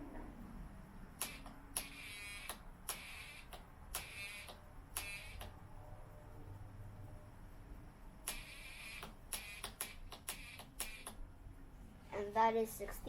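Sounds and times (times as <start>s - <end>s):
switch clicks: 1.2s - 5.6s.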